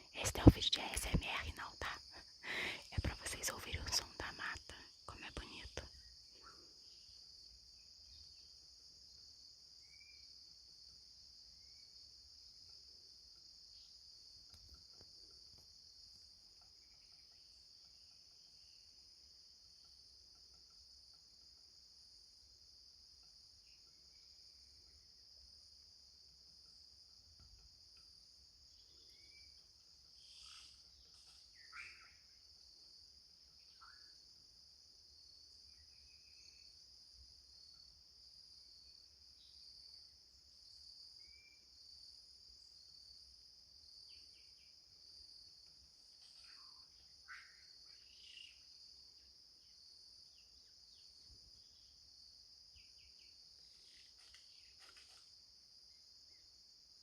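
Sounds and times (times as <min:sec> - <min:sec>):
insect chorus: 0:00.0 - 0:57.0
bird calls and chirps: 0:46.4 - 0:48.7.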